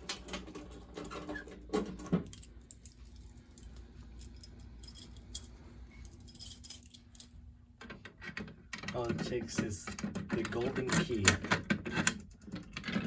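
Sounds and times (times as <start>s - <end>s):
faint steady hum: 0.0s - 13.0s
keys jingling: 2.2s - 7.4s.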